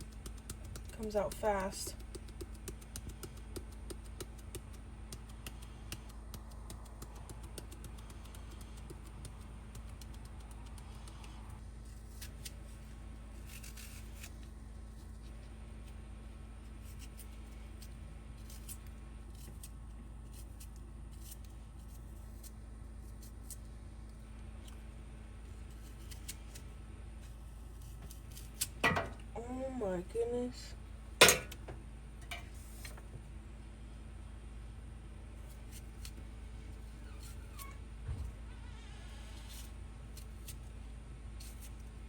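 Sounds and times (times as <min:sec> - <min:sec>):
steady low hum: 0:00.0 - 0:42.0.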